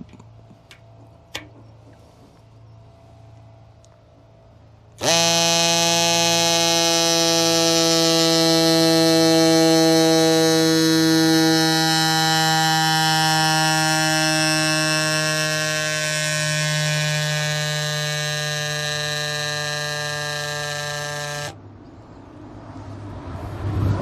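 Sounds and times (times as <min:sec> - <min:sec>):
electric air pump buzzing: 0:00.0 - 0:21.6.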